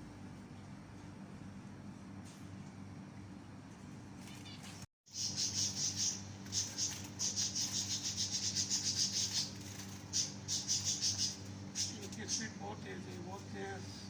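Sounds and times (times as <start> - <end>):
steady low hum: 0.0 - 14.0
finches chirping: 4.3 - 12.5.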